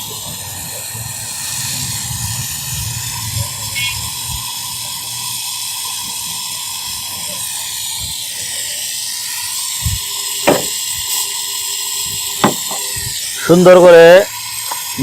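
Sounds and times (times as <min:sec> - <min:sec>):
gas torch flame hissing: 0:00.0 - 0:15.0
small knocks: 0:10.5 - 0:10.8, 0:12.4 - 0:12.9.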